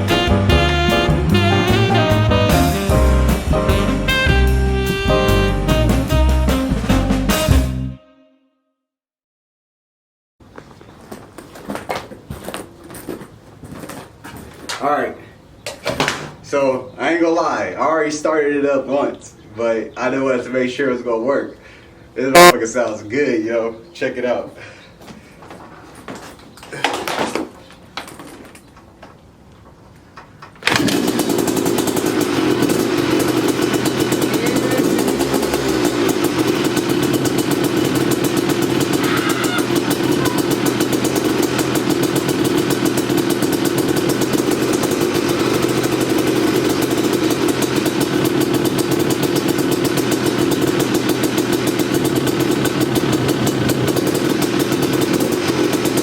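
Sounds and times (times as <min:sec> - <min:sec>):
two-stroke engine running: 0:22.4 - 0:22.6, 0:30.6 - 0:56.0.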